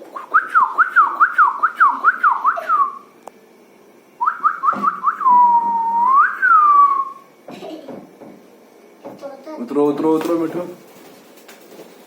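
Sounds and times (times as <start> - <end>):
person whistling: 4.2 - 7.2.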